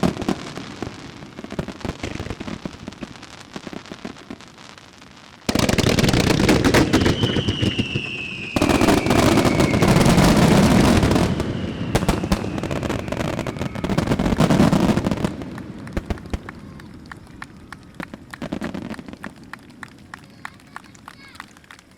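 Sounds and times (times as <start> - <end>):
fireworks launches and bursts: 0.0 - 21.9
high falling whistle: 6.8 - 14.2.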